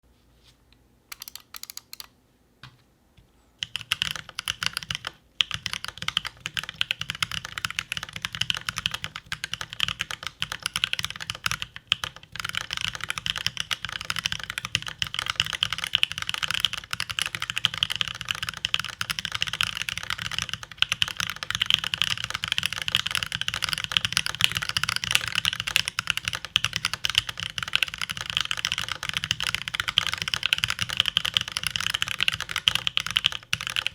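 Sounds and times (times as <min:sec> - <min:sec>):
mechanical keyboard typing: 0:01.1 - 0:02.2, 0:03.6 - 0:33.9.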